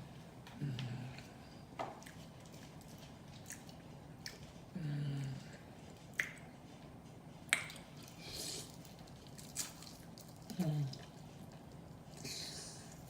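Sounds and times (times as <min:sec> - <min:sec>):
chewing: 0:01.9 - 0:13.0
wet lip smacks and clicks: 0:06.1 - 0:06.5.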